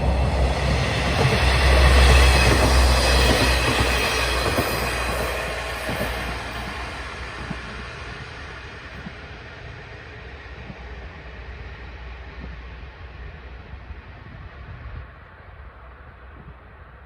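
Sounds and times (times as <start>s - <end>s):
train passing: 0.0s - 17.0s.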